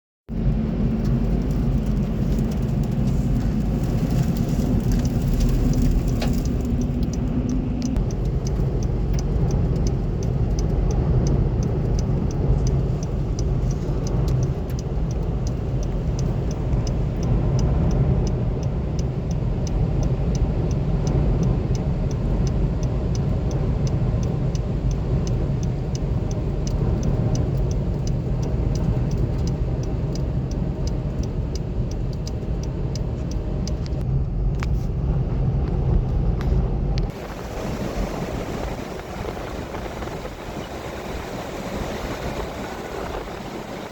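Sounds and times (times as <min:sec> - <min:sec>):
quick even ticking: 0:03.8 - 0:33.8
wind buffeting microphone: 0:35.2 - 0:43.9.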